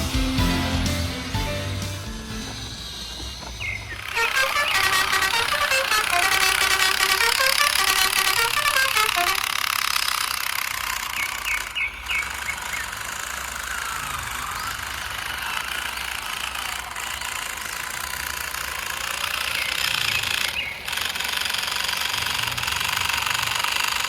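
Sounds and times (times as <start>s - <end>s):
toy truck electric motor whirring: 2.5s - 24.0s.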